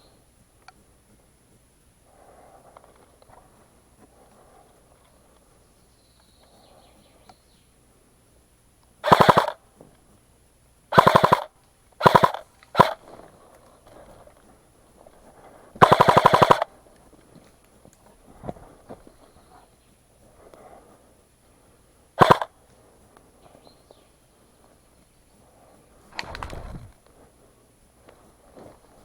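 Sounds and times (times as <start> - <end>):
airsoft gun firing bursts: 9.0 - 9.6, 10.9 - 13.1, 15.8 - 16.7, 22.2 - 22.5.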